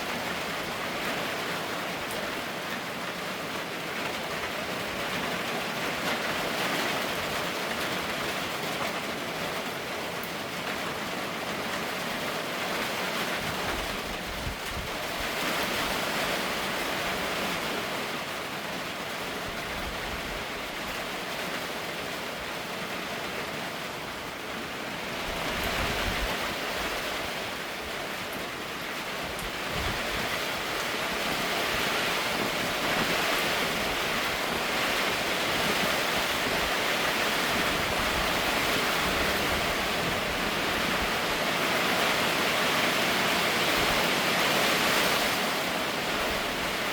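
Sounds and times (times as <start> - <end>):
heavy rain falling: 0.0 - 46.9
wind rumble on microphone: 13.4 - 16.2, 25.2 - 27.9, 29.2 - 41.2.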